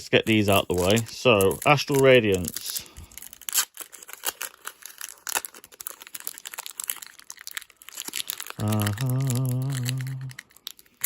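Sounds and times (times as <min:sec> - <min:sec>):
foil wrapper crinkling: 0:00.0 - 0:11.0.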